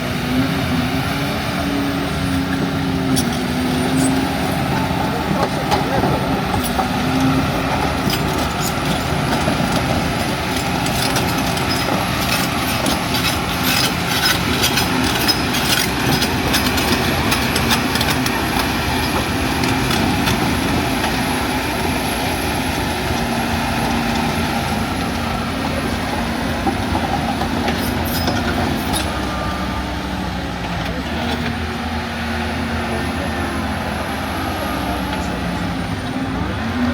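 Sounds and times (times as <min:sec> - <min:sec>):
excavator diesel engine running: 0:00.0 - 0:36.9
clanks and knocks: 0:02.5 - 0:21.4.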